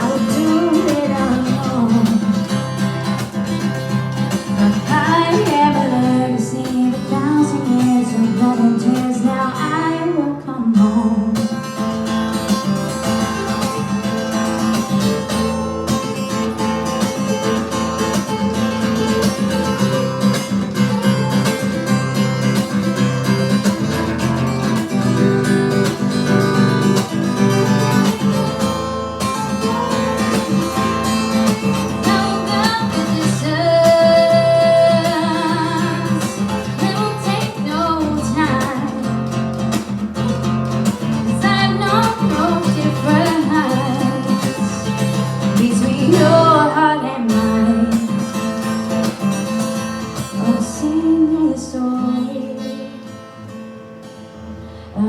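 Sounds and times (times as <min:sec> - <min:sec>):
person singing wordlessly: 0:00.0 - 0:02.4, 0:29.5 - 0:39.0
acoustic guitar strumming: 0:00.0 - 0:55.0.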